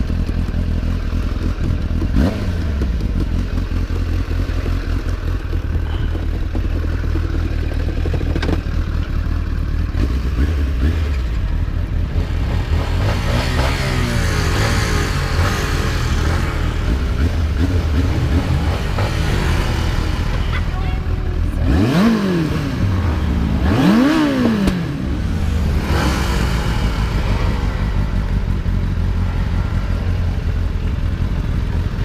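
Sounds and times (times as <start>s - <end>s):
motorcycle engine running: 0.0s - 32.0s.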